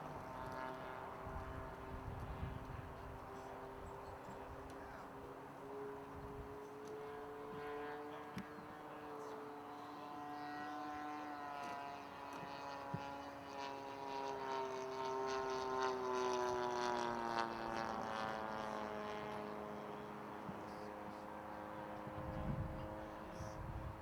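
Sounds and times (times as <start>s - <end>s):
model airplane engine flying past: 0.0s - 24.0s.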